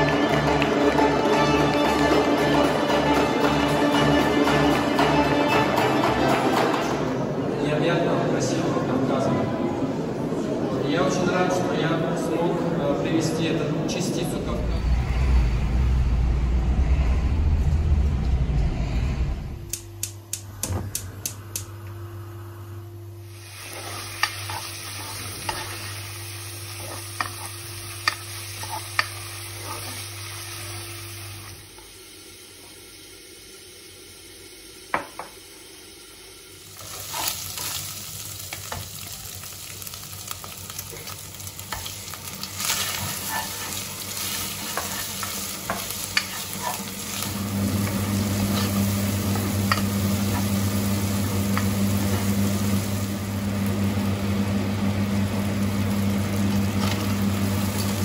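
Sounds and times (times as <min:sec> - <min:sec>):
steady low hum: 0:07.1 - 0:29.7, 0:41.4 - 0:58.0
food sizzling in a pan: 0:23.2 - 0:58.0.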